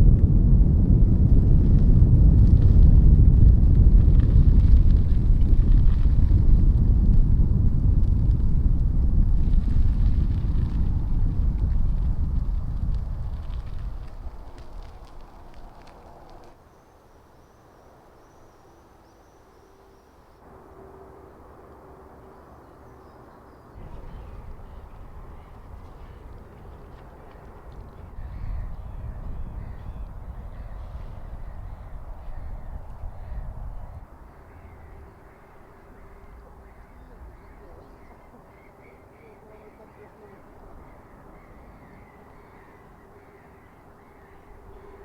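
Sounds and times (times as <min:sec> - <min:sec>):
low rumble: 0:00.0 - 0:16.5, 0:23.8 - 0:35.0
bird calling: 0:34.3 - 0:45.0.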